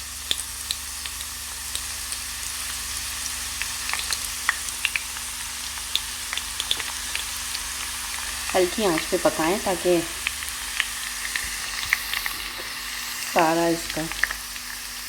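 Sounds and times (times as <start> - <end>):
garlic and seeds sizzling in oil: 0.0 - 15.0.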